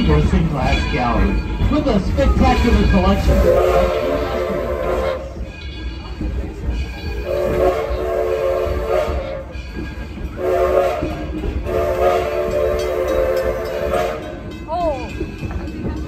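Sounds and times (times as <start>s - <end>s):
low rumble of train running: 0.0s - 16.0s
steam locomotive chime whistle: 2.5s - 6.2s, 6.8s - 15.2s.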